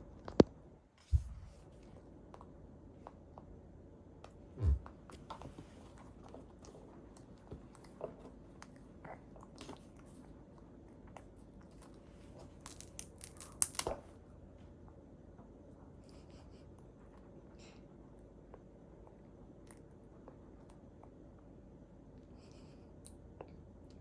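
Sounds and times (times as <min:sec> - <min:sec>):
baby eating with smacking clicks: 0:02.0 - 0:14.1.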